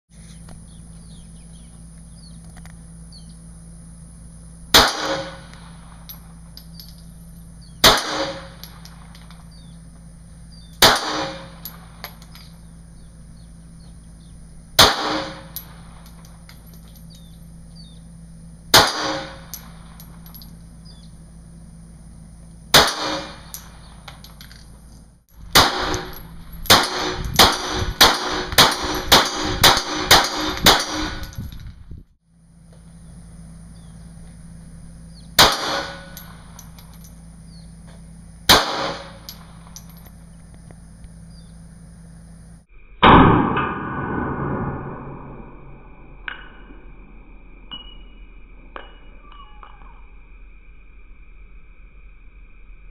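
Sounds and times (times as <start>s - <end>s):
pistol shots: 4.7s - 5.8s, 7.8s - 9.1s, 10.8s - 12.2s, 14.8s - 16.1s, 18.7s - 19.9s, 22.7s - 23.9s, 25.5s - 31.3s, 35.4s - 36.3s, 38.5s - 39.5s, 43.0s - 45.5s.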